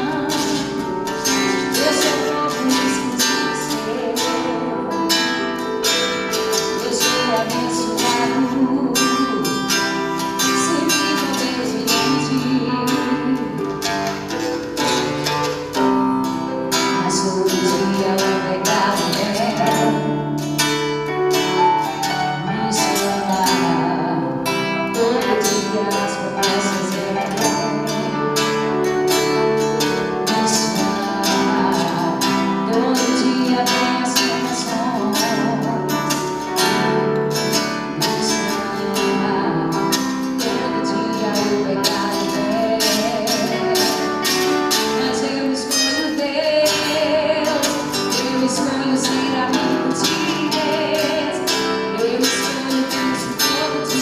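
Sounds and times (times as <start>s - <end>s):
guitar: 0.0s - 54.0s
person singing: 0.0s - 54.0s.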